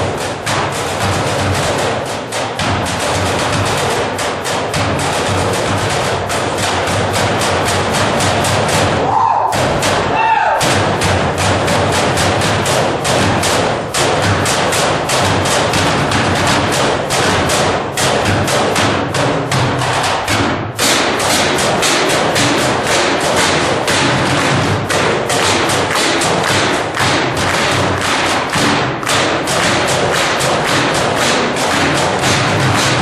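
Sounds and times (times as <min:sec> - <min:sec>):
fast percussion strikes: 0:00.0 - 0:33.0.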